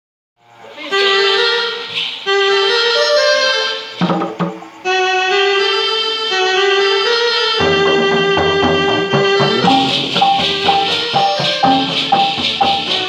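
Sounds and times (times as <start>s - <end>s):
keyboard reedy melody: 0.9s - 13.0s
drum hits: 4.0s - 4.8s, 7.6s - 13.0s.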